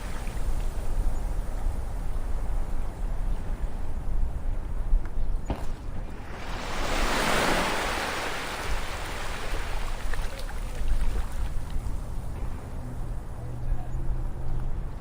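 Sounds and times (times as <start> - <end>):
low rumble of surf: 0.0 - 15.0
wave washing on shore: 6.0 - 12.2.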